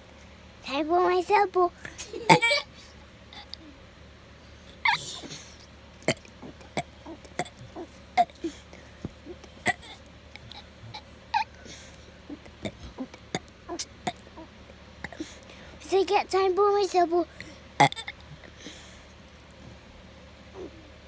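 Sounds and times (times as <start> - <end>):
child gulping: 2.1 - 2.6, 4.9 - 8.5.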